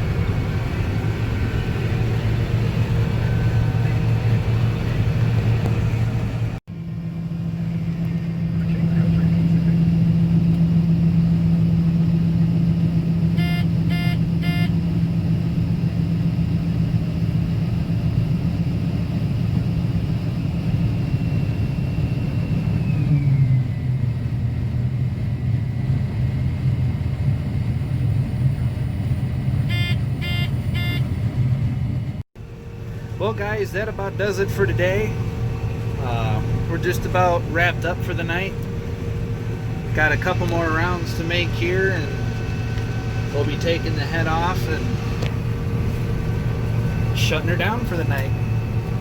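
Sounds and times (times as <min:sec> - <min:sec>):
combine harvester high whine: 0:00.0 - 0:49.0
engine hum: 0:00.0 - 0:49.0
short electronic beeps: 0:13.4 - 0:14.8, 0:29.7 - 0:31.2.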